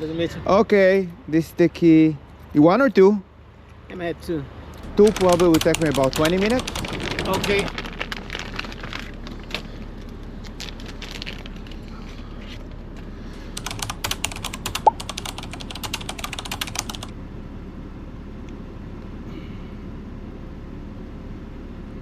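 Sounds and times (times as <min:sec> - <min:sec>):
steady low hum: 0:00.0 - 0:22.0
rapid keystroke clicks: 0:04.8 - 0:07.8, 0:13.6 - 0:17.1.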